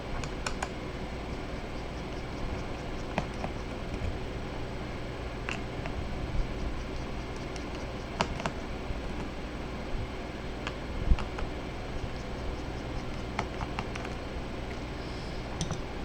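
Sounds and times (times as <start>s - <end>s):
steady low hum: 0.0s - 16.0s
screwdriver clicks and taps: 15.6s - 15.8s.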